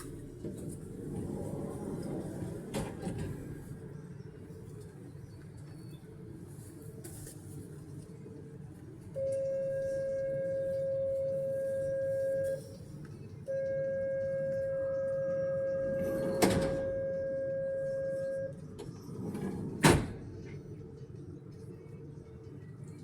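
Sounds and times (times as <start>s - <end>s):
door warning beeps: 9.2s - 12.8s, 13.5s - 18.6s
sliding doors thudding shut: 16.0s - 17.0s, 19.1s - 20.3s.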